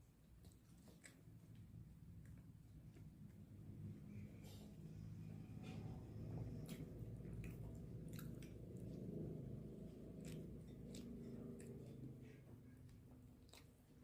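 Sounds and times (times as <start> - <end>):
person chewing food: 0.4 - 3.5, 5.3 - 14.0.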